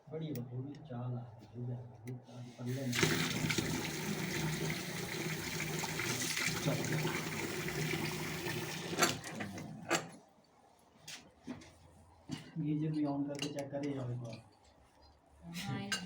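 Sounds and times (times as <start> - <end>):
water running from tap: 2.7 - 9.7.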